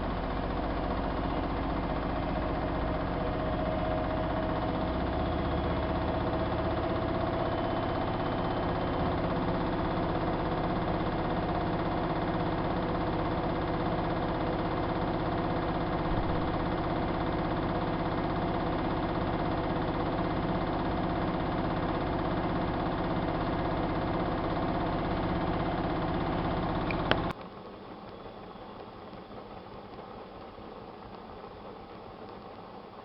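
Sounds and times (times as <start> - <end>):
washing machine motor hum: 0.0 - 33.0.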